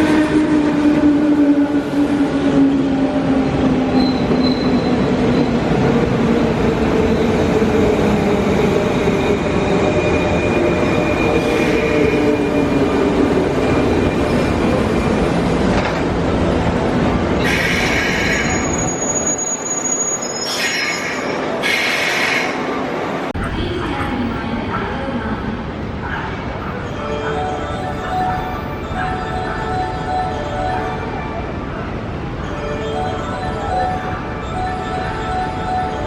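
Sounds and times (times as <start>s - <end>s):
train rumble on rails: 0.0s - 36.0s
train wheels squealing: 3.9s - 5.6s, 17.4s - 22.6s.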